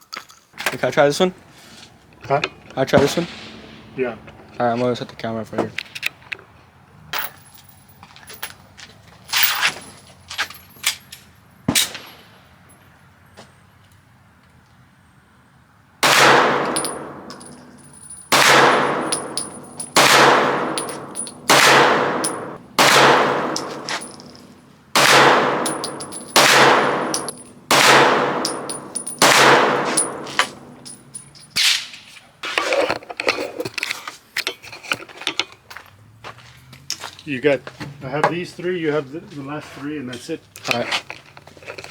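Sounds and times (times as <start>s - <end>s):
loud gunshots with echo: 3.0s - 4.1s, 16.0s - 17.7s, 18.3s - 24.2s, 25.0s - 30.8s.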